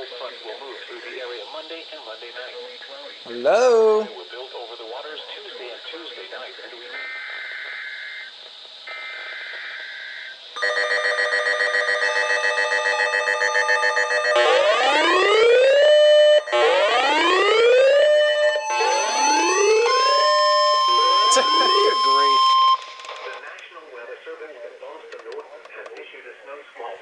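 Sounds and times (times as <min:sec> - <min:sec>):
rapid pulsing alarm beep: 0:08.9 - 0:23.0
steady warning tone: 0:08.9 - 0:23.1
whooping siren sweeps: 0:12.6 - 0:22.8
buzzy alert data bursts: 0:18.2 - 0:22.8.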